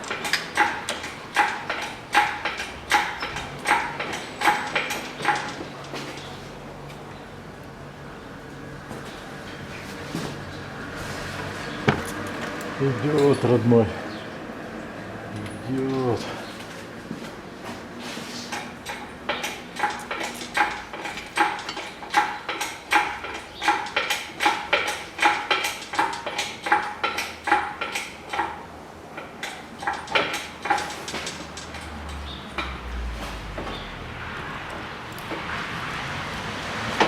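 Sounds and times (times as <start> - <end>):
metal clinking of lifting gear: 0.0 - 6.4, 18.5 - 28.6.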